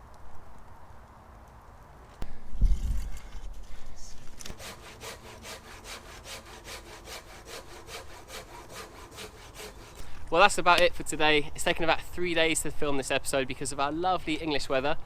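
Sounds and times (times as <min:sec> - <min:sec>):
saw cutting wood: 0:04.4 - 0:10.2.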